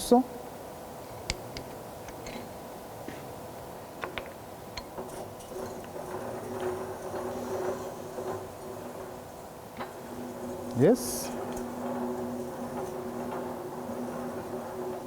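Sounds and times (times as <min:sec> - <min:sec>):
rolling machine humming: 0:04.9 - 0:15.0.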